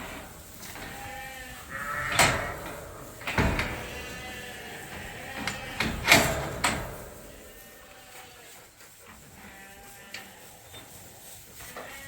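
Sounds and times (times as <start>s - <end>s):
sheep bleating: 1.0s - 2.3s, 3.8s - 6.0s.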